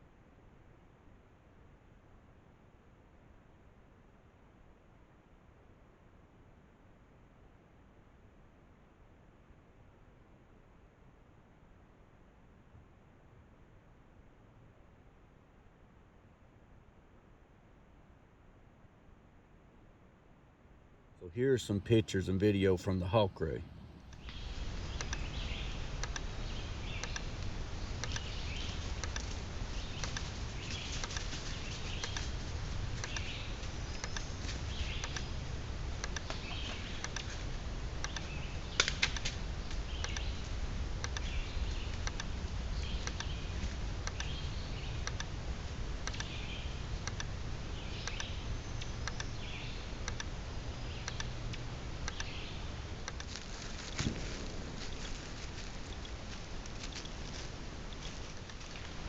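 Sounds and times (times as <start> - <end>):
steady low rumble: 21.2 - 59.0
faint clicks: 23.1 - 59.0.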